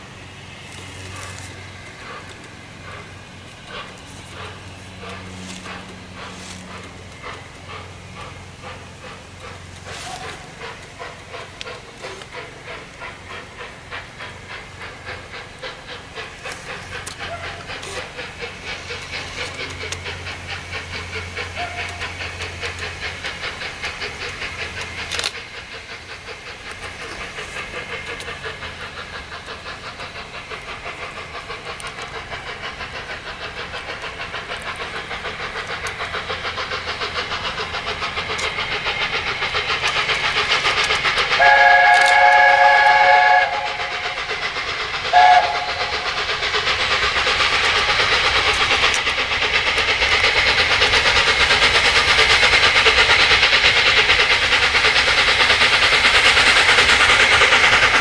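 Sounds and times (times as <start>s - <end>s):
steam locomotive exhaust beats: 0.0s - 58.0s
steam locomotive whistle: 41.4s - 44.2s, 45.1s - 46.1s.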